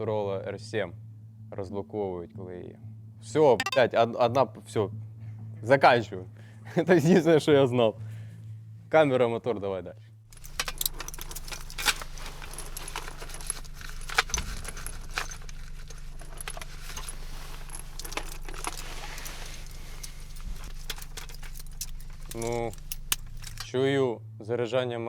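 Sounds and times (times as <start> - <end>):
low generator hum: 10.3 - 24.4.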